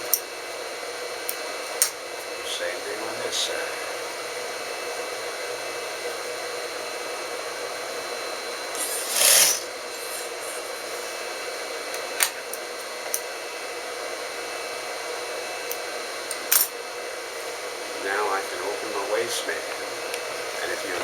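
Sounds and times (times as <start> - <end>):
sewing machine motor hum: 2.4 - 12.6.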